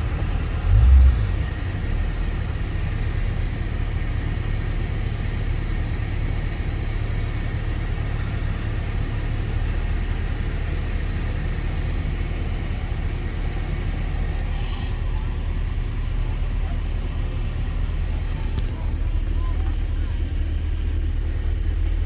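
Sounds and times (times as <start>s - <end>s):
vehicle engine idling: 0.0s - 22.0s.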